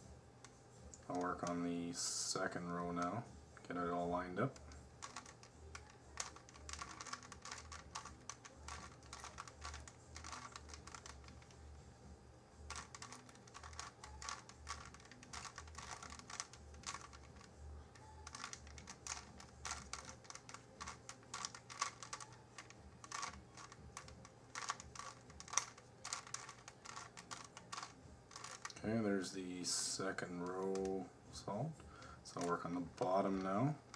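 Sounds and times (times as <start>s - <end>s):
plastic puzzle cube clicking: 4.5s - 11.6s, 12.7s - 17.5s, 18.2s - 28.8s.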